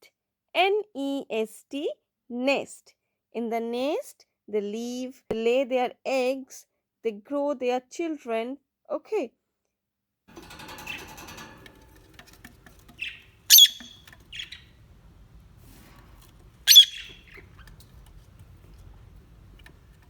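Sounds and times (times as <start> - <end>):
soft bird chirps: 10.4 - 20.0
bird squawking: 12.9 - 19.7.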